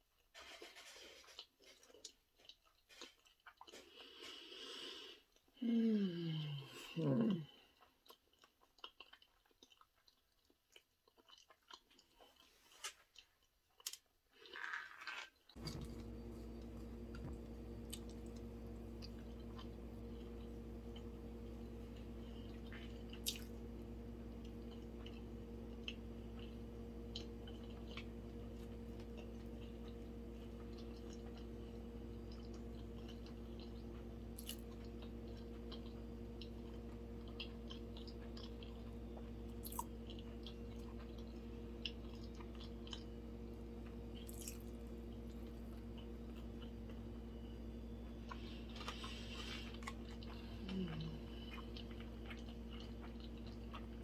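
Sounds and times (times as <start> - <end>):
chewing and wet mouth sounds: 0.2 - 4.6, 7.0 - 54.0
low electrical hum: 15.5 - 54.0.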